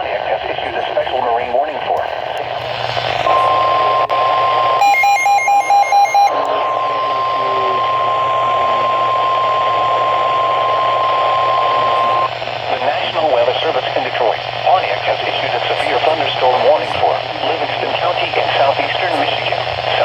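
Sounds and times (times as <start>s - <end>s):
radio static hiss: 0.0s - 4.8s, 6.1s - 20.0s
steady warning alarm tone: 3.3s - 12.3s
short beeps: 4.7s - 12.3s.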